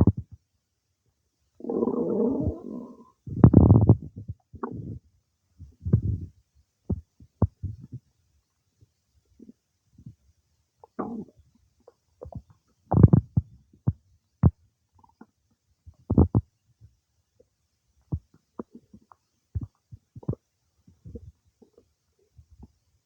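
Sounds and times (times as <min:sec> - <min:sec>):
stomach gurgling: 0:00.0 - 0:00.4, 0:01.6 - 0:05.0, 0:05.6 - 0:08.1, 0:10.8 - 0:16.6, 0:18.1 - 0:22.8.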